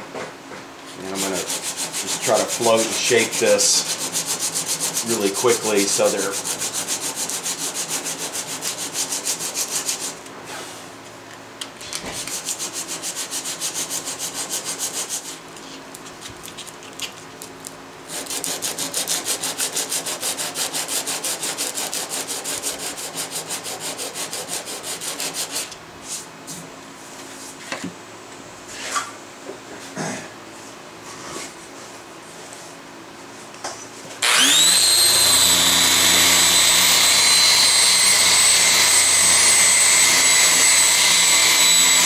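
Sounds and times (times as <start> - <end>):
sandpaper rubbing on wood: 1.0 - 10.2, 12.2 - 15.4, 18.1 - 25.7.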